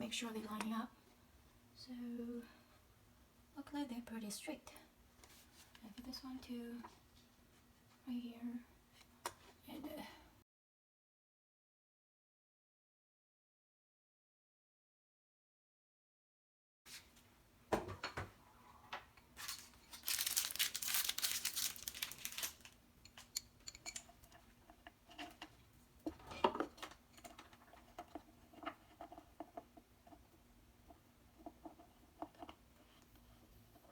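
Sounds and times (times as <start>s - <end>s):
paper tearing and crinkling: 19.4s - 22.8s.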